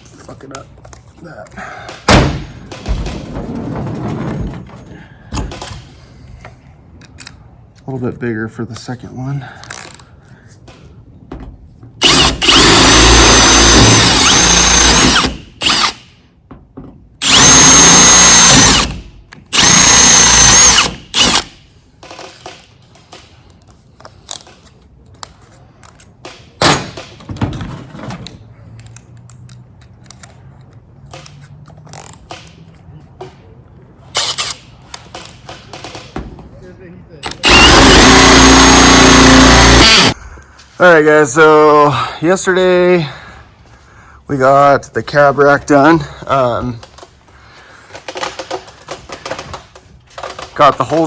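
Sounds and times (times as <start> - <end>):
power drill boring sheet metal: 12.0 - 16.0, 17.2 - 21.5, 37.3 - 40.2.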